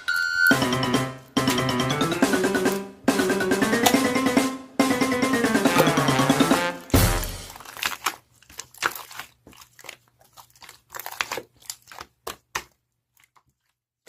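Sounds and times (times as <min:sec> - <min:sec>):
crinkling and crackling: 0:07.4 - 0:14.0.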